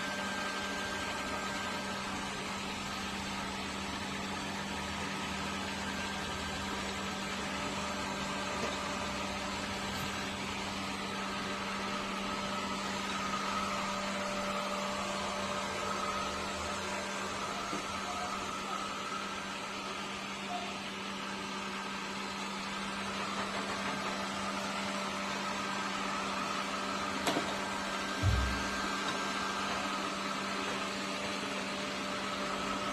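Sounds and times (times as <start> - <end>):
robot vacuum motor hum: 23.2 - 32.9
short low thump: 28.2 - 28.8.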